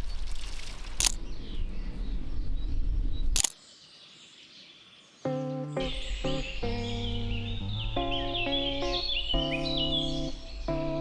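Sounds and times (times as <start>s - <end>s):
faint birds chirping: 0.0s - 11.0s
outdoor background noise: 0.0s - 11.0s
camera shutter clicks: 1.0s - 1.2s, 3.4s - 3.6s
music: 5.3s - 11.0s.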